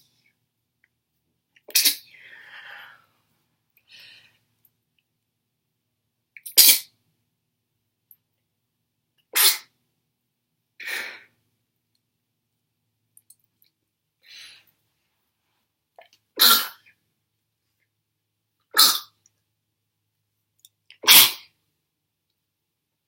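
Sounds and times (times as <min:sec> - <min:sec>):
faint breathing: 0:02.1 - 0:04.5.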